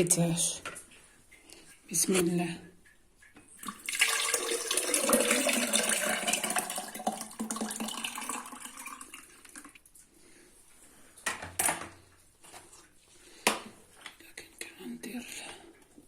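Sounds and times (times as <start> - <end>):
liquid pouring into container: 3.5 - 9.8.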